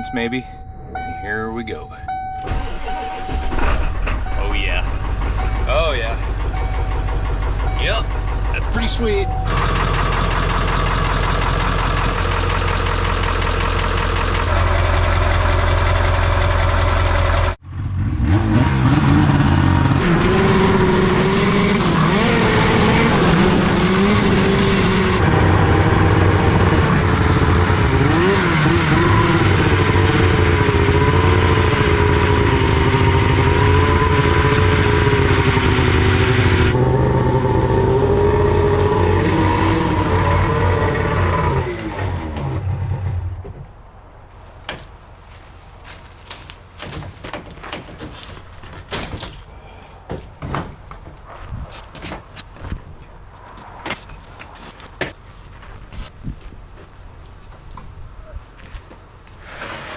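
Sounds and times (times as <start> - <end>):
diesel engine idling: 0.0 - 17.9
engine with wavering pitch: 0.0 - 44.0.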